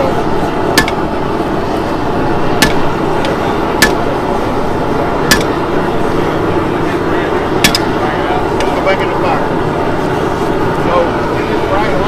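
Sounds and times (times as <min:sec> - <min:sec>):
steady background noise: 0:00.0 - 0:12.0
hammer striking steel on anvil: 0:00.8 - 0:01.1, 0:02.6 - 0:04.2, 0:05.3 - 0:05.6, 0:07.6 - 0:08.0.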